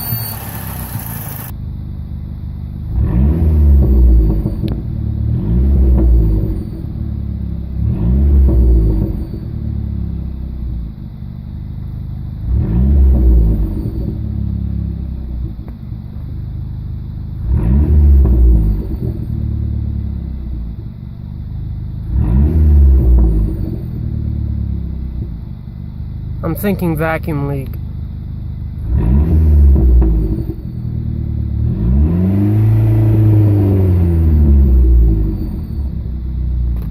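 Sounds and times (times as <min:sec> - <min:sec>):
faint high whistle: 0:00.0 - 0:01.0, 0:35.2 - 0:36.1
car engine idling and revving: 0:00.0 - 0:36.9.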